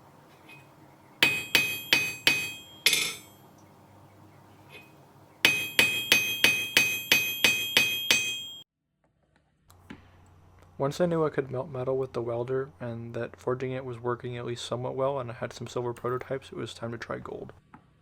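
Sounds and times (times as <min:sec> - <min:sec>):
hammer forging ringing metal: 0:01.2 - 0:03.5, 0:04.7 - 0:08.6.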